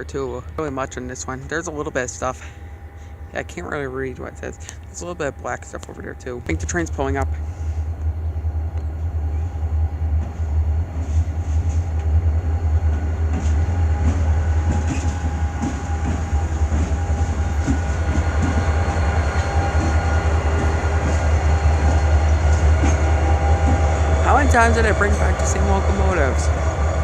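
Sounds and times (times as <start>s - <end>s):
deep train rumble: 0.0s - 27.0s
train wheels clicking over rail joints: 10.1s - 27.0s.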